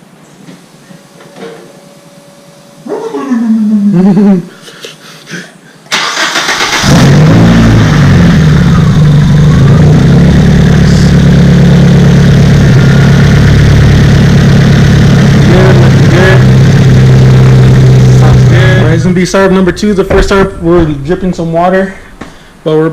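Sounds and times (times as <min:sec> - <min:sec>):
car engine starting and idling: 0:05.9 - 0:22.6.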